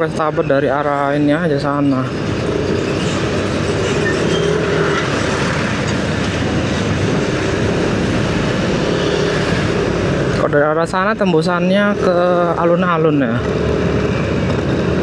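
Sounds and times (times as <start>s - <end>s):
car engine: 0.0s - 15.0s
tyre road noise: 0.0s - 15.0s
wind noise: 1.7s - 10.5s.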